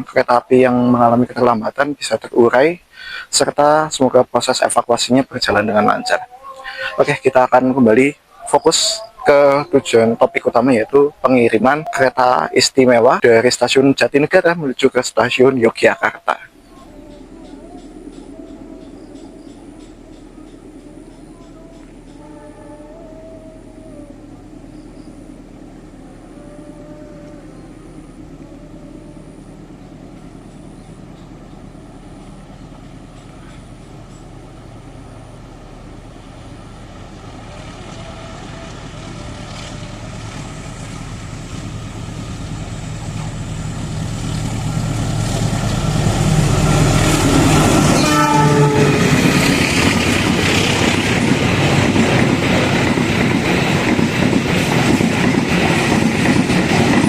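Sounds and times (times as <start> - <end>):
diesel locomotive engine: 0.0 - 57.0
train wheels rolling: 16.5 - 22.6, 29.1 - 57.0
train horn blast: 44.7 - 50.3.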